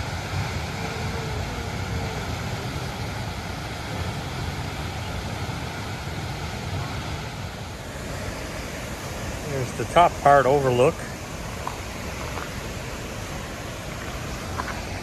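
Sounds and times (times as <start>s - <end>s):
waterfall roar: 0.0s - 15.0s.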